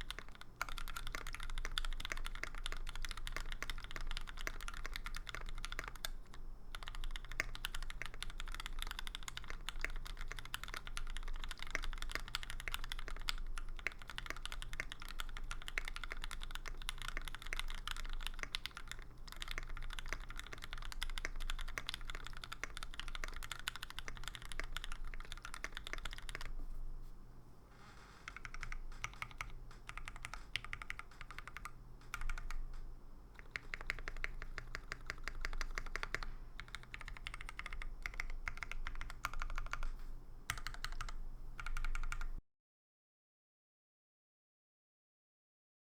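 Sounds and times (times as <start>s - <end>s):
mechanical keyboard typing: 0.0s - 26.6s, 28.0s - 42.4s.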